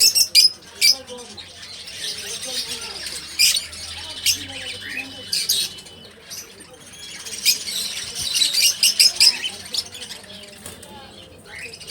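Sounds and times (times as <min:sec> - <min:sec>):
small birds chirping: 0:00.0 - 0:11.9.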